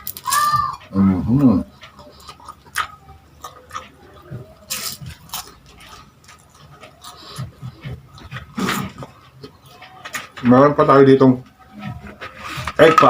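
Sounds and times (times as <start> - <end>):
chewing and wet mouth noises: 0.0 - 10.5, 11.4 - 13.0
sharp food crunches: 2.1 - 9.5.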